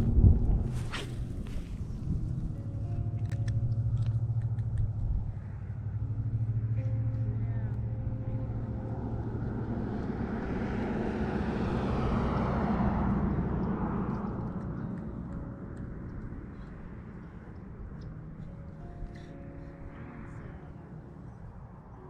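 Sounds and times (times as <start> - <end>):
low steady rumble: 0.0 - 22.0
vehicle passing by: 0.0 - 22.0
sharp clicks: 3.2 - 5.1.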